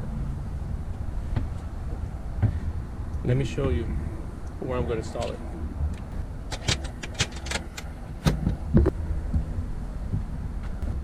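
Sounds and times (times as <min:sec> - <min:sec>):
steady low rumble: 0:00.0 - 0:11.0
sharp clicks and knocks: 0:05.2 - 0:09.5.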